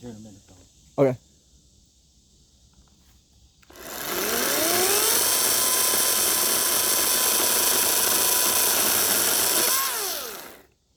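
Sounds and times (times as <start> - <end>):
chainsaw revving at full throttle: 3.7 - 10.7.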